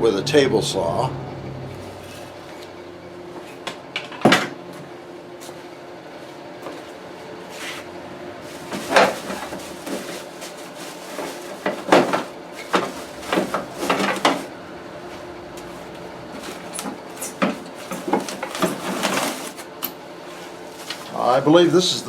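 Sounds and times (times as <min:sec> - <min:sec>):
parts being handled: 0:08.4 - 0:22.0.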